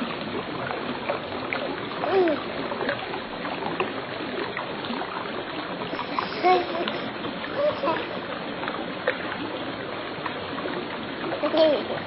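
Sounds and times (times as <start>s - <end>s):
running and splashing water: 0.0s - 12.0s.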